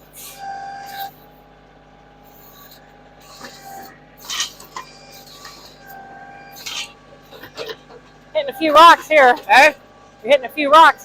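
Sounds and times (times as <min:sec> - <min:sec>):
diesel engine running: 0:00.0 - 0:11.0
brief squeal: 0:00.1 - 0:01.3, 0:02.3 - 0:07.8
backhoe bucket scraping soil: 0:02.2 - 0:11.0.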